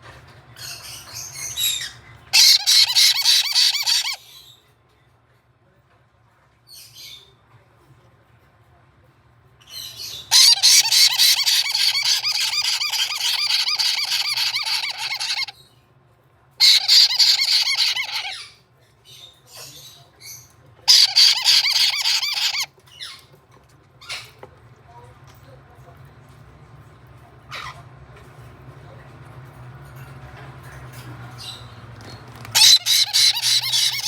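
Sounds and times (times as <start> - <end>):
parrot chick begging calls: 2.4 - 4.2, 10.3 - 15.5, 16.6 - 18.5, 20.9 - 22.7, 32.6 - 34.0.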